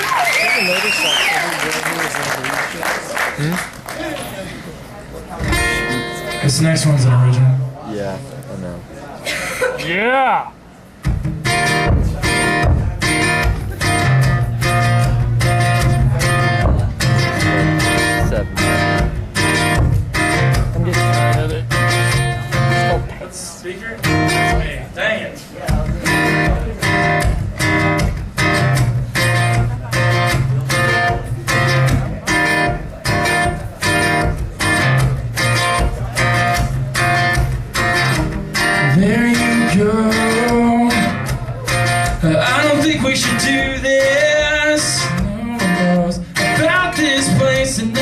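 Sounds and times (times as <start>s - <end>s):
acoustic guitar strumming chords: 11.0s - 23.2s, 24.0s - 25.0s, 25.7s - 48.0s.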